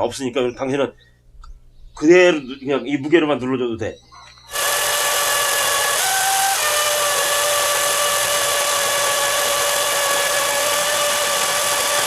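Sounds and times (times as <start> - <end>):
electric chainsaw cutting log: 4.5 - 12.0.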